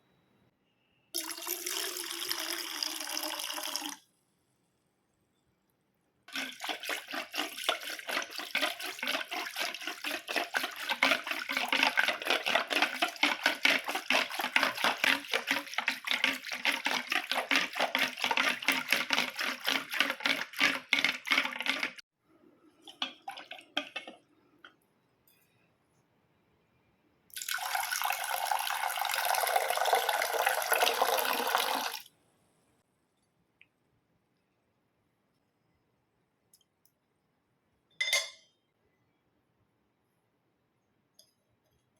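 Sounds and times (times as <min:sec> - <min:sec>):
liquid sloshing in a vessel: 0:06.3 - 0:24.6.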